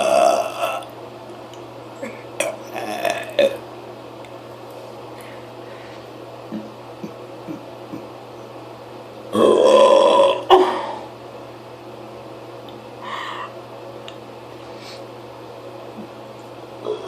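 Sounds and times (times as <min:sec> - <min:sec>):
person burping loudly: 0:00.0 - 0:00.9, 0:02.4 - 0:03.6, 0:09.3 - 0:11.0.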